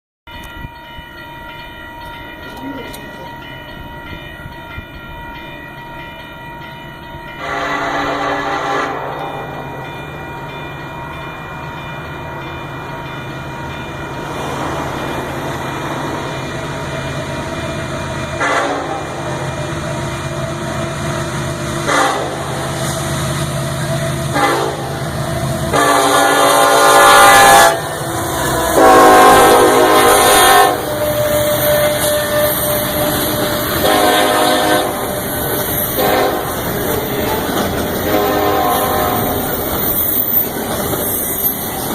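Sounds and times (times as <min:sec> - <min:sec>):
train rumble: 0:00.3 - 0:41.9
locomotive air horn blasts: 0:07.4 - 0:09.6, 0:18.4 - 0:19.2, 0:21.8 - 0:22.9, 0:23.8 - 0:35.3, 0:35.9 - 0:36.7, 0:38.0 - 0:39.5.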